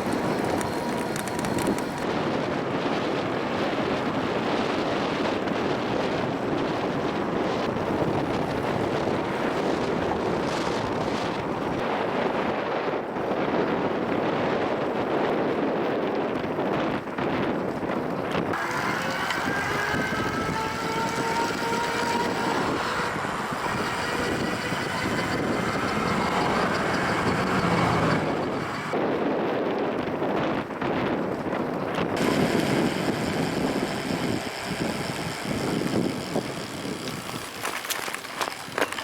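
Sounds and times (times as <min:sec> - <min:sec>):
wind rushing over microphone: 0:00.0 - 0:39.0
rising whine: 0:18.6 - 0:29.0.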